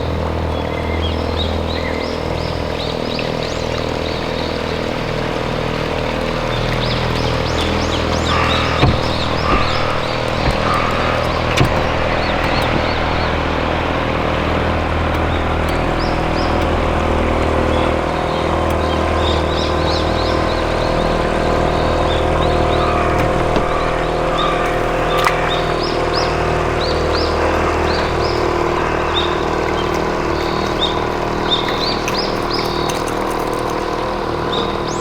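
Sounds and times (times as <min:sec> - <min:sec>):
birds chirping: 0:00.0 - 0:35.0
boat motor running: 0:00.0 - 0:35.0
light clicks: 0:06.5 - 0:35.0.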